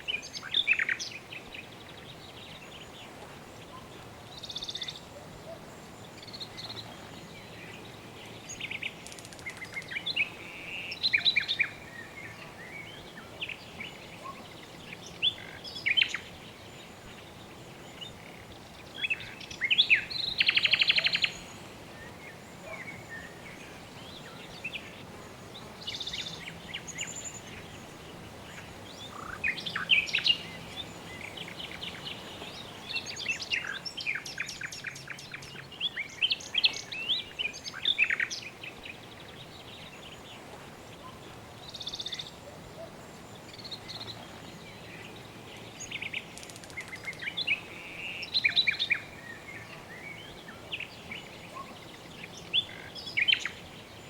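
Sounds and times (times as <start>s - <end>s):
soft background hiss: 0.0s - 54.0s
birds chirping and trilling: 17.9s - 54.0s.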